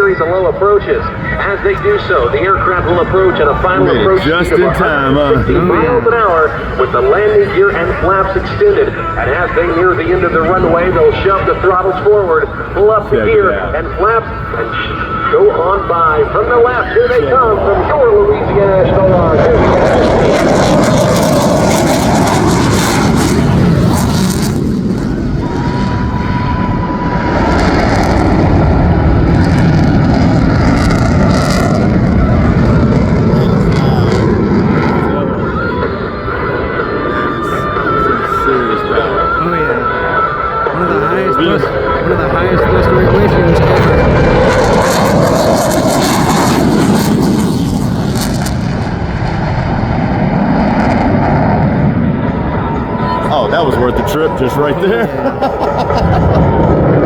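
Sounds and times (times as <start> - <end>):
fighter jets roaring: 0.0 - 57.0.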